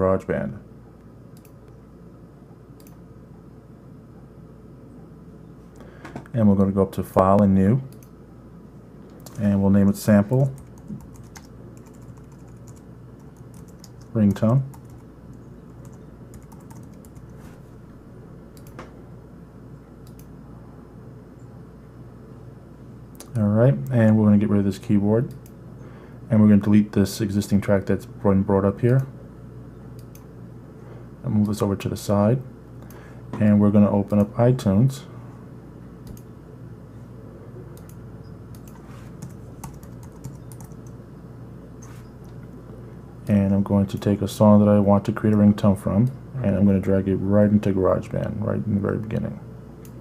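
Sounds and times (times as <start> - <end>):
steady low hum: 0.0 - 50.0
computer clicks: 1.4 - 1.8, 2.8 - 3.0, 7.4 - 8.2, 9.1 - 9.5, 10.2 - 17.4, 18.5 - 18.9, 20.0 - 20.3, 25.3 - 25.6, 30.0 - 30.3, 36.0 - 36.3, 37.8 - 41.0.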